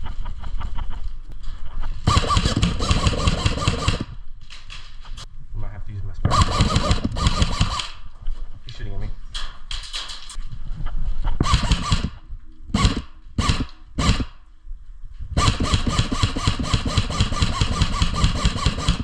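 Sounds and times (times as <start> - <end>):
airsoft rifle automatic fire: 2.1 - 4.1, 6.3 - 8.0, 11.4 - 14.4, 15.4 - 19.0.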